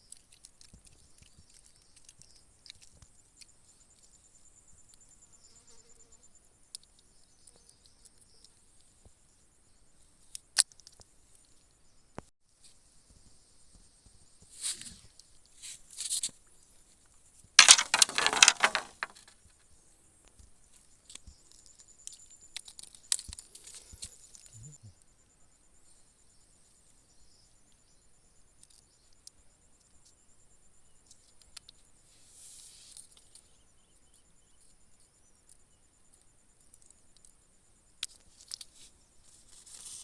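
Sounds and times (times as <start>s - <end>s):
rustling and crinkling: 14.4s - 19.5s, 38.0s - 40.0s.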